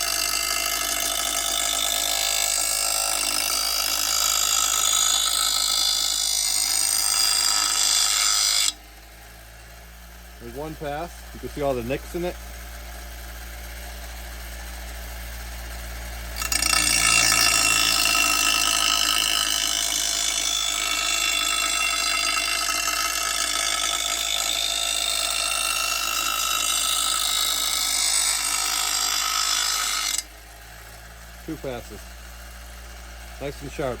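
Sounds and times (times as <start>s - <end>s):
bench grinder sharpening blade: 0.0s - 8.8s, 16.4s - 30.3s.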